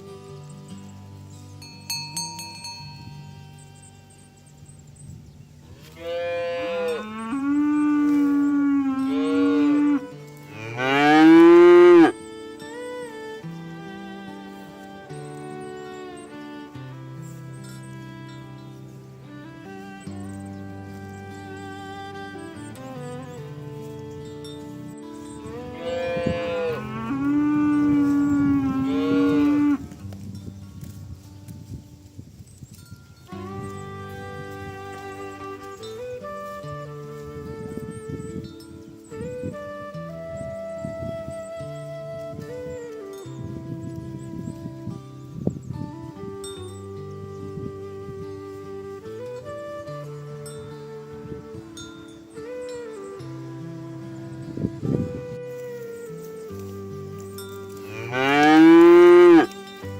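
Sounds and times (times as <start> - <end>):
soft background music: 0.0 - 59.9
cattle mooing: 5.7 - 12.1, 25.7 - 29.9, 57.8 - 59.6.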